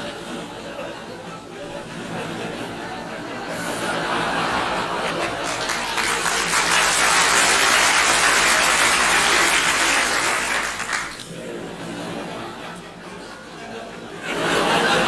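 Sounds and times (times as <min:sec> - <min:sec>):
audience laughter: 0:00.0 - 0:15.0
audience applauding: 0:03.4 - 0:11.4.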